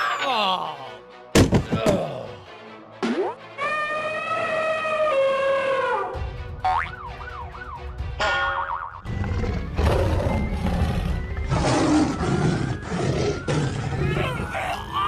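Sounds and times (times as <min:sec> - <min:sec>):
busy background music: 0:00.0 - 0:14.6
siren wailing: 0:03.6 - 0:06.3, 0:06.9 - 0:08.0, 0:09.2 - 0:15.0.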